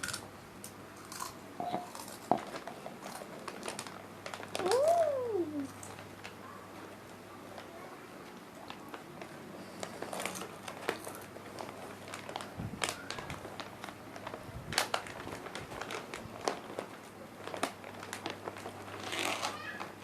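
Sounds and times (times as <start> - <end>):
chips crunching while eaten: 0.0 - 0.3, 1.0 - 6.0.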